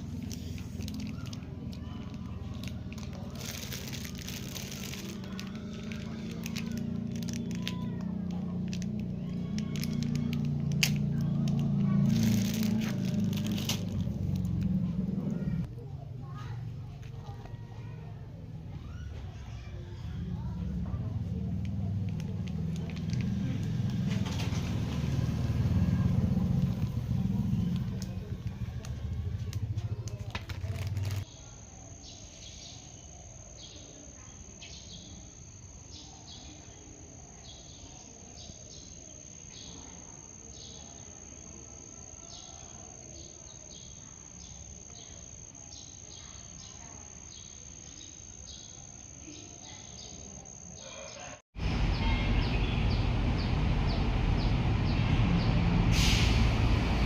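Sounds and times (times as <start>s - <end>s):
loud low rumbling noise: 0.0s - 18.7s, 19.8s - 31.3s, 51.6s - 57.0s
insect drone with chirps: 20.1s - 56.5s.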